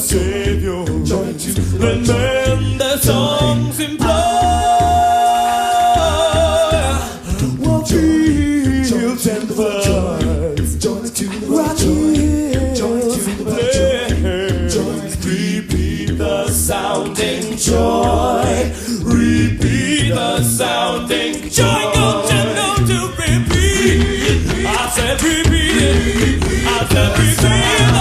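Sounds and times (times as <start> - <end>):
people singing pop-gospel song: 0.0 - 28.0
steady drum beat: 0.0 - 28.0.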